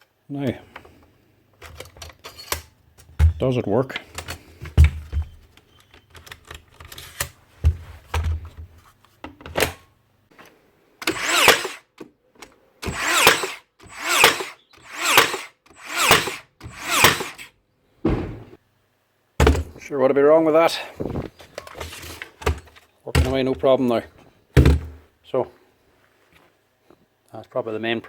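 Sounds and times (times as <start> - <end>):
nail gun firing: 11.0 - 11.9, 12.8 - 17.5
dull knocks: 18.0 - 18.6.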